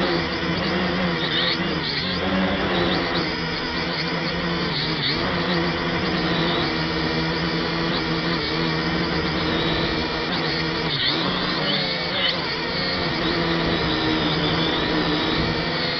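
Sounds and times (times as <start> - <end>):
quadcopter motors whining: 0.0 - 15.9.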